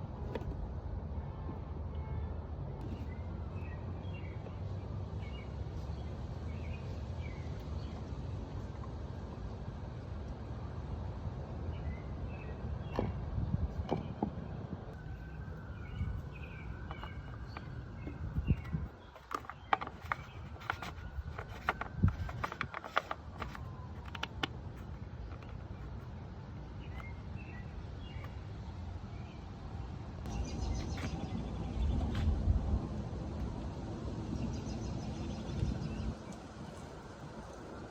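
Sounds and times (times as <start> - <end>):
small birds chirping: 25.3 - 28.5.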